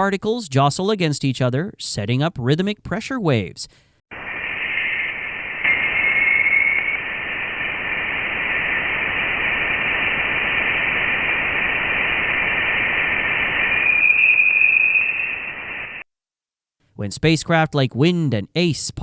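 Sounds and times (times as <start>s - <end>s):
radio static hiss: 4.1s - 16.1s
thin whistling tone: 4.2s - 7.3s, 13.6s - 16.0s.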